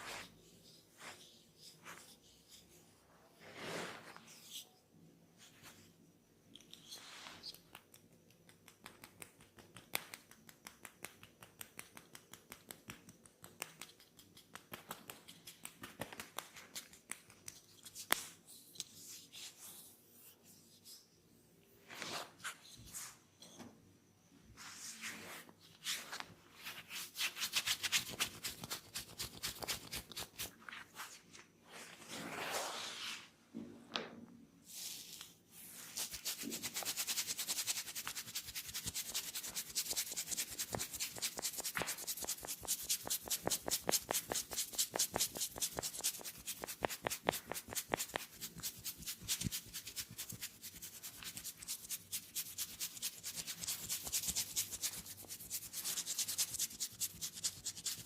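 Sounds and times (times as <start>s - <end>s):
hands scratching through hair: 6.9s - 21.0s, 24.6s - 33.2s, 34.7s - 58.0s.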